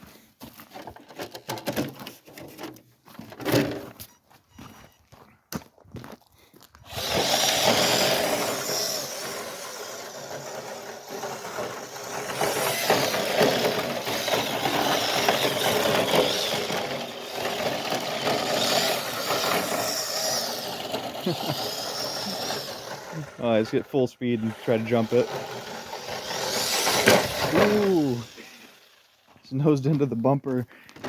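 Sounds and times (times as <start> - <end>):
electric motor whining: 6.8 - 23.7, 24.3 - 29.3.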